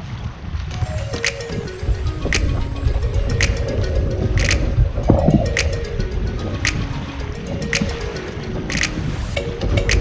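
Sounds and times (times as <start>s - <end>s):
melody of short notes: 0.7s - 10.0s
sharp percussive hits: 3.4s - 3.7s, 4.4s - 4.8s, 6.7s - 7.0s, 8.7s - 10.0s.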